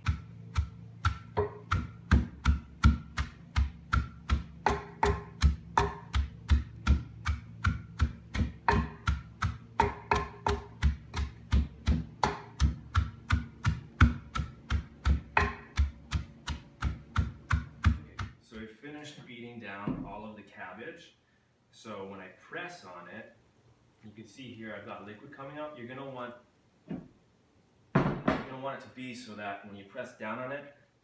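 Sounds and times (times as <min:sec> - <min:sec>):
masher pounding cabbage: 0:00.0 - 0:18.4.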